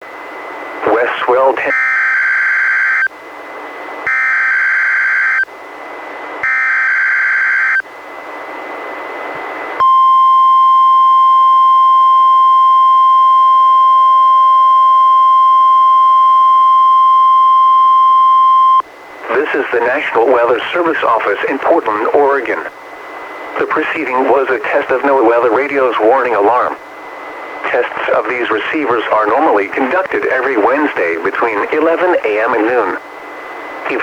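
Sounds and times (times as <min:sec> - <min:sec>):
steady warning alarm tone: 0:00.3 - 0:03.3, 0:04.0 - 0:05.5, 0:06.4 - 0:08.0, 0:09.8 - 0:22.7
radio hiss: 0:00.8 - 0:01.7, 0:19.2 - 0:34.0.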